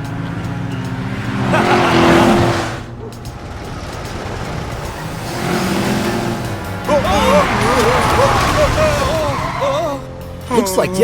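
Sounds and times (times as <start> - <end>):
tyre screech: 5.2 - 10.1.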